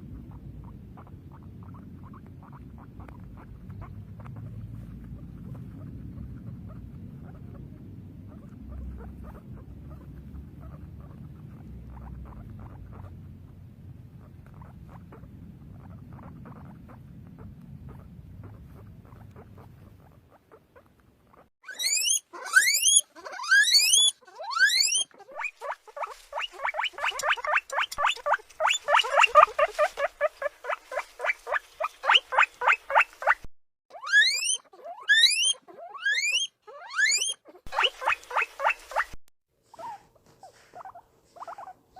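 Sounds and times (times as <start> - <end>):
guinea pig low rumble: 0.0 - 41.9
guinea pig short squeaks: 0.0 - 41.9
guinea pig whistled wheeks: 20.8 - 41.8.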